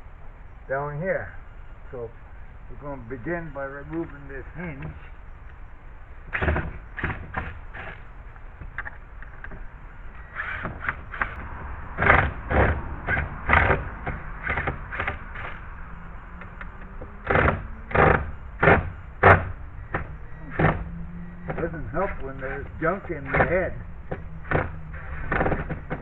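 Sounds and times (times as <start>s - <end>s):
tool scraping: 6.3s - 15.7s, 16.4s - 26.0s
hinge squeaks: 6.3s - 26.0s.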